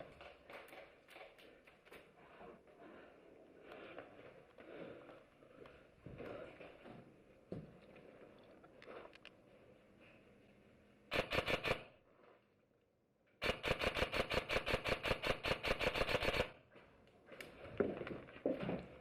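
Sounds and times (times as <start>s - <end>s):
airsoft rifle firing bursts: 11.1s - 12.0s, 13.4s - 16.6s.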